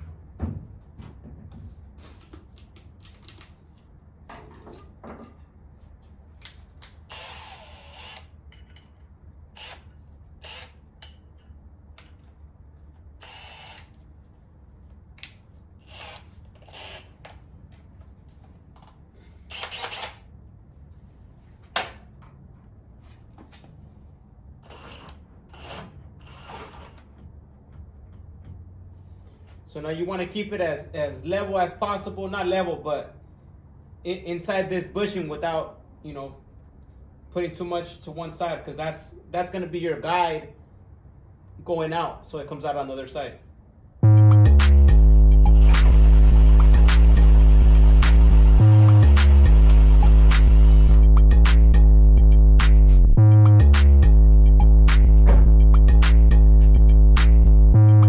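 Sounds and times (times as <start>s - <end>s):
power drill boring through metal: 7.1s - 8.4s, 9.6s - 10.8s, 13.2s - 13.9s, 15.8s - 17.1s, 19.5s - 20.2s, 24.6s - 27.1s, 45.3s - 51.0s.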